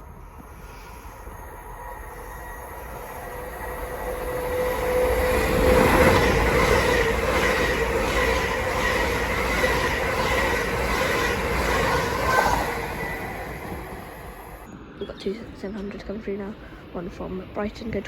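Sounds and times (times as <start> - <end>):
steady whining tones: 0.0 - 14.9
train passing at speed: 0.0 - 18.0
train wheel beats: 1.6 - 14.7.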